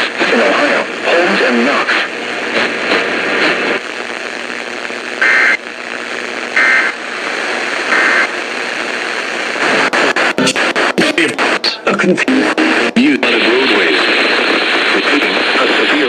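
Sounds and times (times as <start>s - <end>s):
radio static hiss: 0.0s - 16.0s
two-tone digital data bursts: 10.4s - 12.0s.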